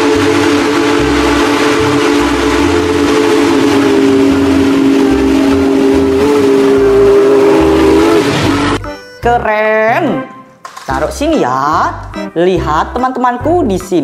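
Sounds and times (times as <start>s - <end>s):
low pulsing: 0.0s - 8.8s
train whistle chord: 0.0s - 8.9s.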